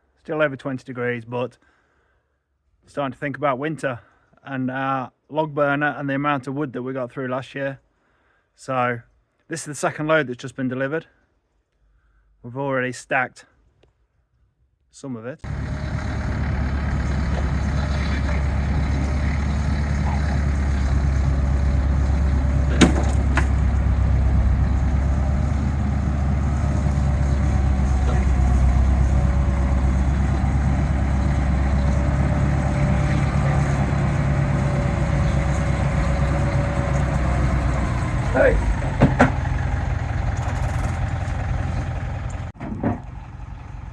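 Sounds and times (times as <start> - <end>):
truck engine idling: 15.5 - 43.9
sharp knocks: 20.6 - 24.6.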